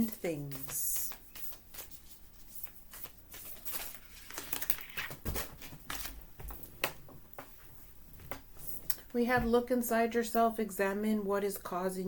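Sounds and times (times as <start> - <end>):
cards rustling and flicking: 0.5 - 7.0.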